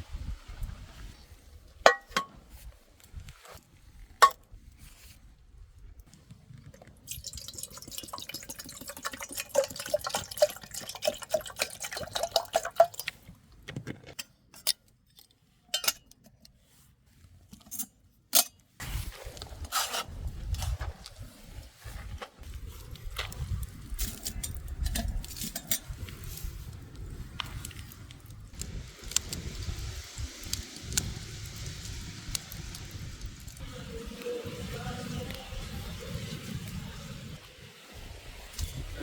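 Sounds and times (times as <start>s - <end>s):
liquid pouring and gurgling: 6.6s - 13.2s.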